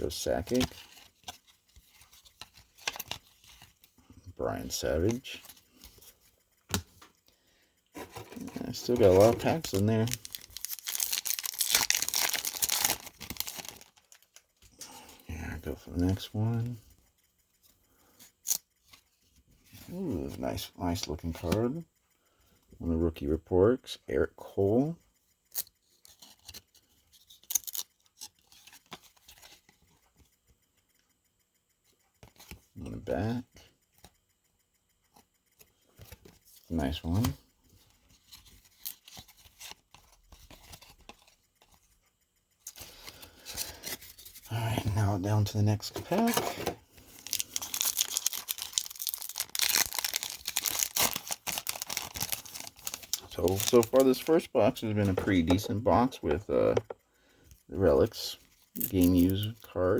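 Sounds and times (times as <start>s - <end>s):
trading cards rustling: 0.0s - 7.3s, 8.0s - 16.8s, 42.7s - 59.9s
wrapper crinkling: 8.2s - 14.4s, 45.8s - 54.5s, 58.7s - 59.7s.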